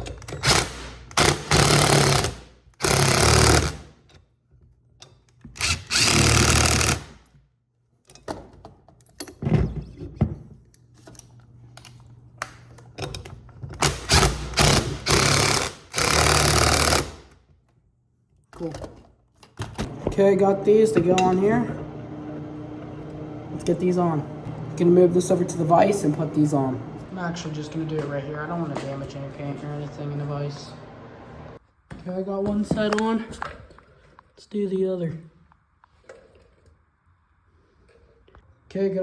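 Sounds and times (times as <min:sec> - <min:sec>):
impact wrench bursts: 0:00.3 - 0:03.9, 0:05.6 - 0:07.2, 0:13.8 - 0:17.3.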